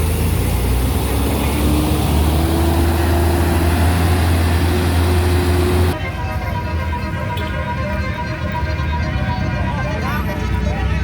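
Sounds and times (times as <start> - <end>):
steady tones: 0.0 - 6.0
diesel bus engine rumbling: 0.0 - 11.0.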